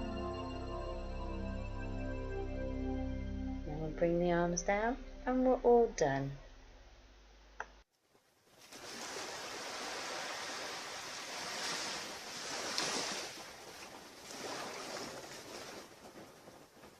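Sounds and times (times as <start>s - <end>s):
waves washing onto a beach: 8.6s - 16.9s.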